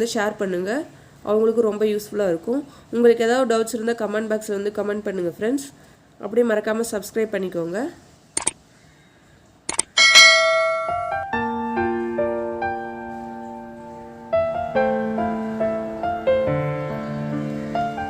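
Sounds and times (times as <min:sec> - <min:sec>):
bell-like chime: 0:10.0 - 0:11.3
piano music: 0:10.0 - 0:18.0.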